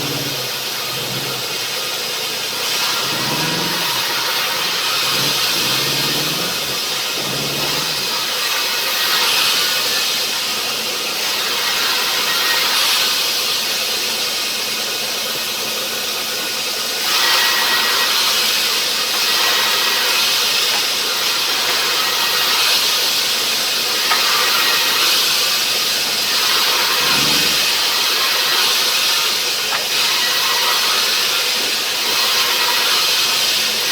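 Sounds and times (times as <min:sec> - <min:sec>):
low wavering machinery drone: 0:00.0 - 0:10.1, 0:26.6 - 0:28.2
sawmill saw cutting wood: 0:00.0 - 0:33.9.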